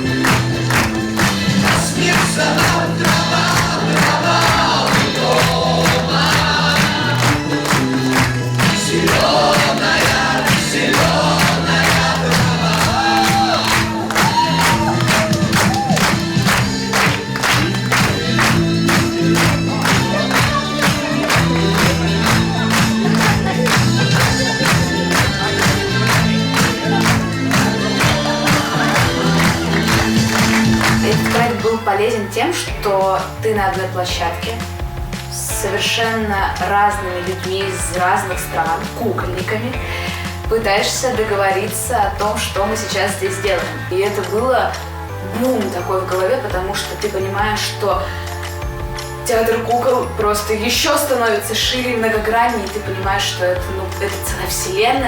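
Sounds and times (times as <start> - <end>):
group of voices singing or chanting: 0.0 - 31.5
music with a steady beat: 0.0 - 31.9, 32.7 - 45.2, 48.0 - 51.0.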